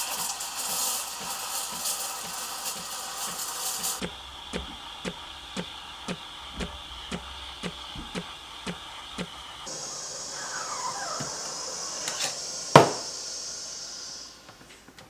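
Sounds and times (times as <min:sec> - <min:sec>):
steam wand hissing in milk: 0:00.0 - 0:14.8
pump ticking: 0:04.0 - 0:09.4.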